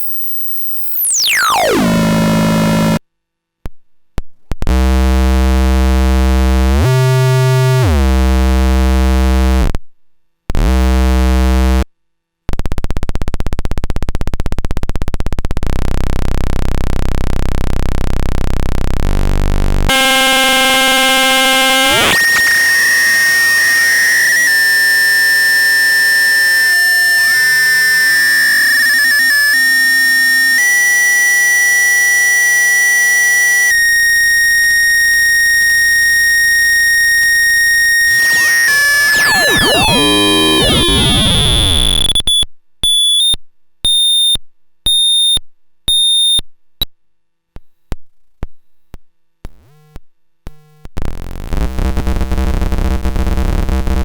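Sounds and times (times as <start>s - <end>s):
harsh buzzing electronic tones: 0.0s - 3.0s, 4.7s - 9.7s, 15.6s - 46.4s, 50.5s - 54.0s.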